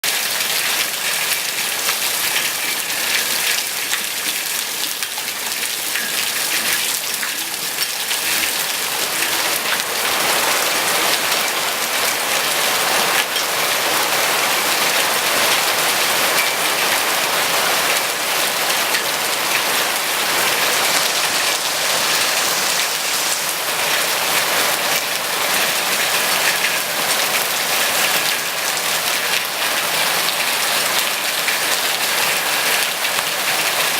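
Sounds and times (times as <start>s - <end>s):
heavy rain falling: 0.0s - 33.9s.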